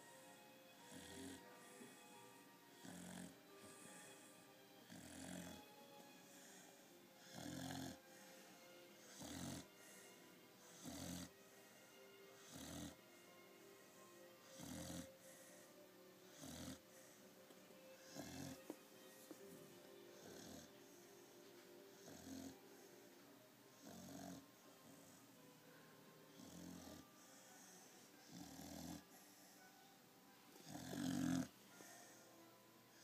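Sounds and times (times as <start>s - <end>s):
puppy snoring: 0.0s - 8.1s, 9.0s - 11.5s, 12.3s - 13.0s, 13.9s - 17.2s, 17.9s - 18.8s, 20.1s - 25.3s, 26.3s - 29.7s, 30.5s - 32.2s.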